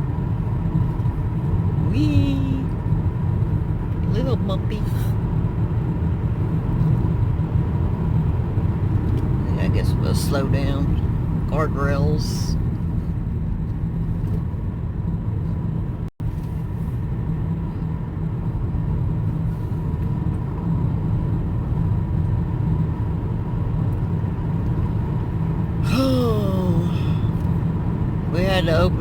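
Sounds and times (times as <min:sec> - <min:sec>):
car road rumble from inside: 0:00.0 - 0:29.0.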